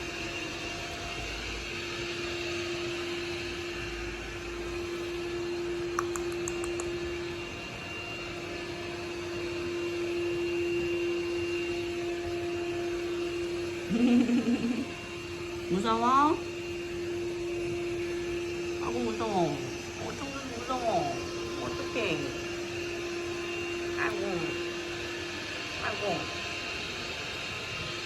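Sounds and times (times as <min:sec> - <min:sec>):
robot vacuum cleaner humming: 0:00.0 - 0:28.0
faint clicks: 0:06.0 - 0:06.9.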